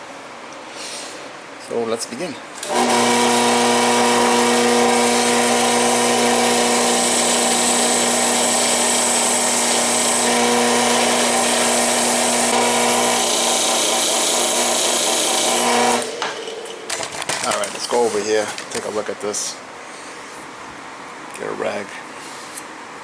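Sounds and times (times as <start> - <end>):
wire brush wheel motor hum: 2.6 - 19.0.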